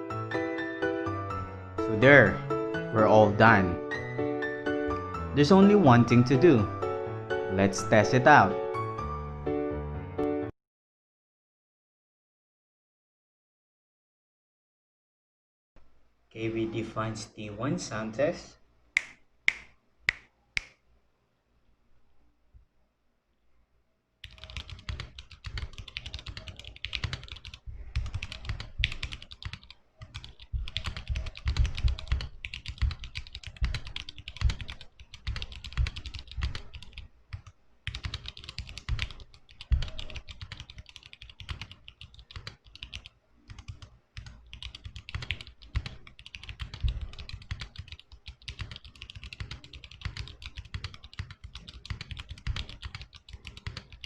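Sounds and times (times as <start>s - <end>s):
mechanical keyboard typing clacks: 24.2s - 54.0s.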